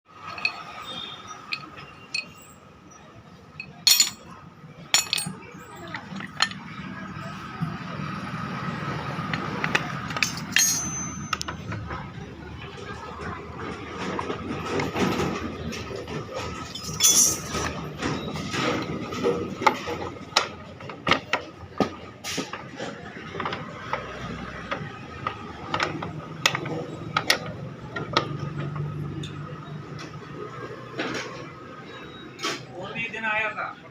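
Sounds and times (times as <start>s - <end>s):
metallic clicks and knocks: 0.2s - 2.5s, 3.6s - 4.3s, 4.9s - 6.7s, 9.3s - 12.0s.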